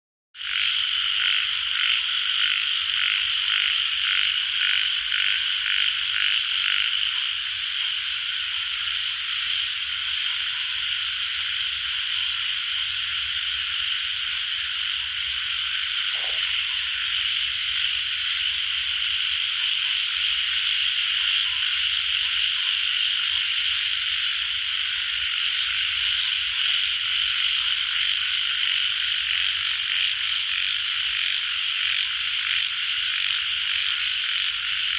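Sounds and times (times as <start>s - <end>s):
chorus of frogs calling: 0.4s - 34.9s
single frog croaking: 14.8s - 22.7s.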